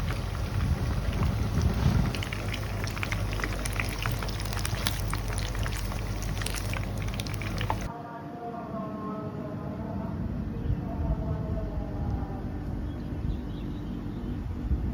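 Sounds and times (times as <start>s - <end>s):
chicken sizzling in hot oil: 0.0s - 7.9s
low steady hum: 0.0s - 7.9s
oil crackles and pops: 0.0s - 7.9s.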